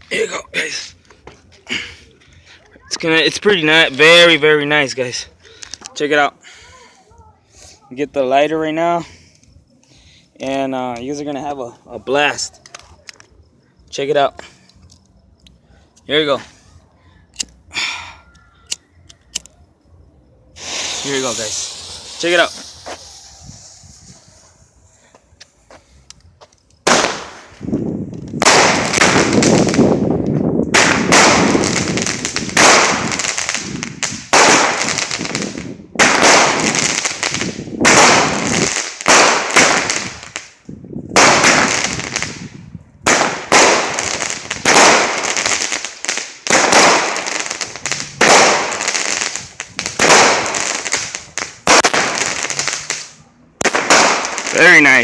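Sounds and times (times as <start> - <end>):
firework bursts: 20.5 - 27.7, 28.3 - 30.1, 30.7 - 55.0.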